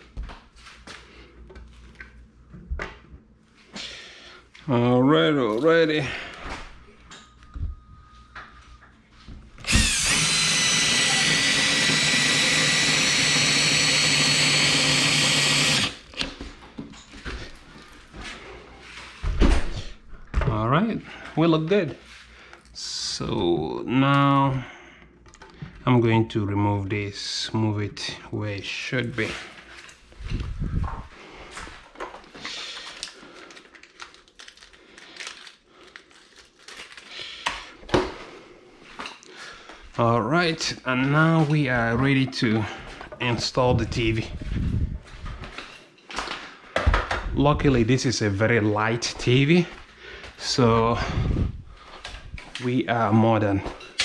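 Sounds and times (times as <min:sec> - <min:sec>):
power drill driving a screw: 0:09.6 - 0:16.4
rustling of handled objects: 0:29.0 - 0:37.7.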